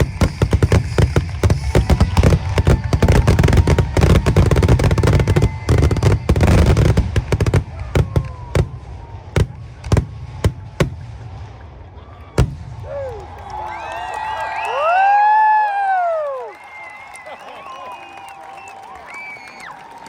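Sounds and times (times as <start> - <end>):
fireworks bangs and crackling: 0.0 - 13.5.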